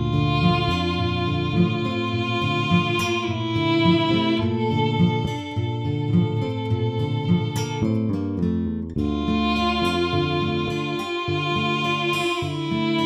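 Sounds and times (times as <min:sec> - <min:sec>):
steady low beat: 0:00.0 - 0:07.0
held string tones: 0:00.0 - 0:13.0.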